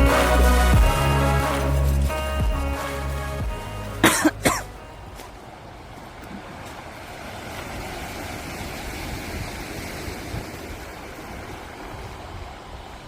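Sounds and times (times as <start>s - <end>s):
wind rumbling on microphone: 6.1s - 13.0s
sea surf: 6.2s - 13.0s.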